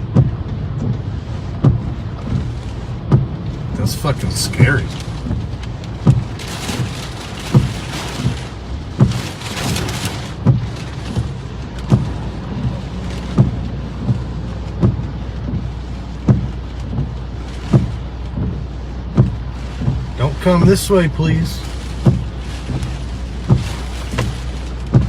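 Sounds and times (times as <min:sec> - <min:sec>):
rain pelting a vehicle: 0:00.0 - 0:25.0
steady low rumble: 0:00.0 - 0:25.0
short low thump: 0:10.4 - 0:17.1, 0:19.1 - 0:20.8.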